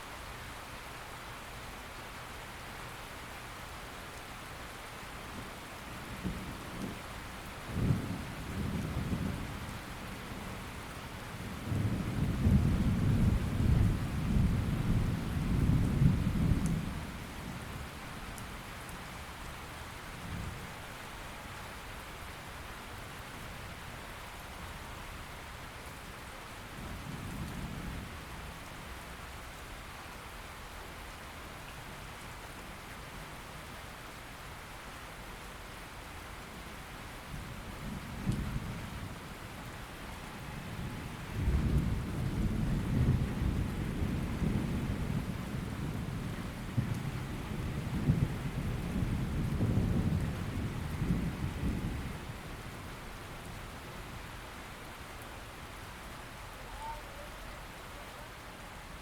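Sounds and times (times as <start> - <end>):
steady rain falling: 0.0 - 59.0
rolling thunder: 40.7 - 52.4.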